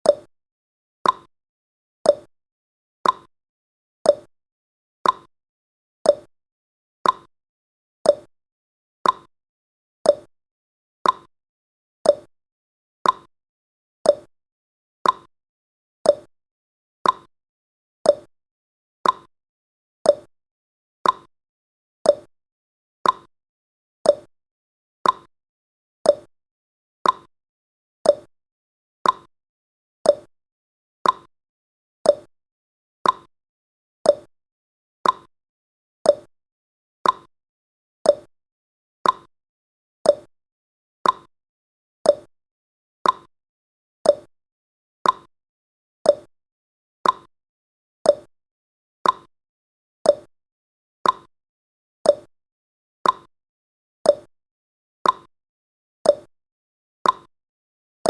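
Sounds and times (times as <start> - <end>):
timer clicks: 1.0 - 1.3, 2.1 - 2.3, 3.0 - 3.3, 4.1 - 4.3, 5.0 - 5.3, 6.1 - 6.3, 7.0 - 7.3, 8.1 - 8.3, 9.0 - 9.3, 10.1 - 10.3, 11.0 - 11.3, 12.0 - 12.3, 13.0 - 13.3, 14.0 - 14.3, 15.0 - 15.3, 16.0 - 16.3, 17.0 - 17.3, 18.0 - 18.3, 19.0 - 19.3, 20.1 - 20.3, 21.0 - 21.3, 22.0 - 22.3, 23.0 - 23.3, 24.0 - 24.3, 25.0 - 25.3, 26.0 - 26.3, 27.0 - 27.3, 28.0 - 28.3, 29.0 - 29.3, 30.0 - 30.3, 31.0 - 31.3, 32.0 - 32.3, 33.0 - 33.3, 34.0 - 34.3, 35.0 - 35.3, 36.0 - 36.3, 37.0 - 37.3, 38.0 - 38.3, 39.0 - 39.3, 40.0 - 40.3, 41.0 - 41.3, 42.0 - 42.3, 43.0 - 43.3, 44.0 - 44.3, 45.0 - 45.3, 46.1 - 46.3, 47.0 - 47.3, 48.1 - 48.3, 49.0 - 49.3, 50.1 - 50.3, 51.0 - 51.3.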